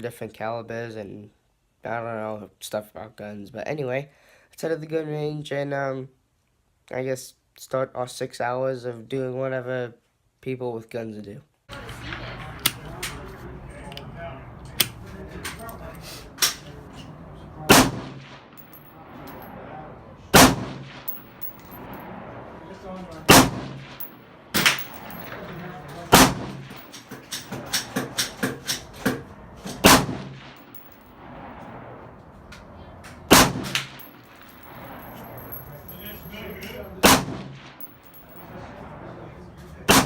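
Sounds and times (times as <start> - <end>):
lighter gunshots: 17.7 - 18.5, 20.4 - 21.9, 23.3 - 25.1, 26.1 - 26.9, 29.8 - 31.0, 33.3 - 34.1, 37.0 - 37.8
gunshots with echo: 17.7 - 19.5, 20.3 - 22.0, 23.3 - 28.2, 29.8 - 31.3, 33.3 - 36.3, 37.0 - 38.5.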